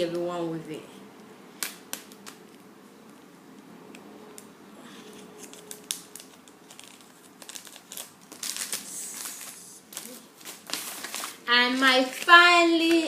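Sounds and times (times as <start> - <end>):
packaging crinkling and rustling: 5.0 - 13.0.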